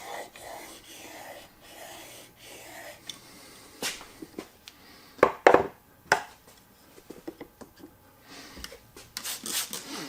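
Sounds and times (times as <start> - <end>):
tools knocking on wooden bench: 5.2 - 6.3.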